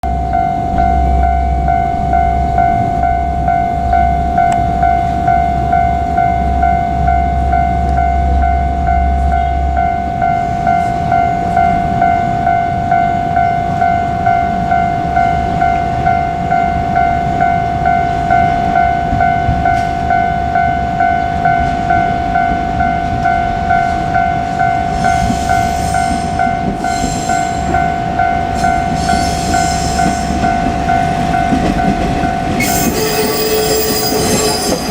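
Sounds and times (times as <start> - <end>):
level crossing warning bell: 0.0 - 34.9
train hiss and squeal: 24.9 - 27.9, 28.6 - 30.3, 32.6 - 34.9.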